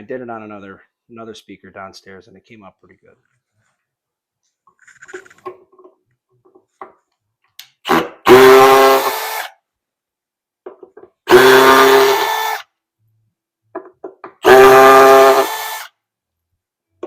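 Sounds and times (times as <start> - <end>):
power drill running: 7.9 - 9.5, 11.3 - 12.7, 14.4 - 15.9.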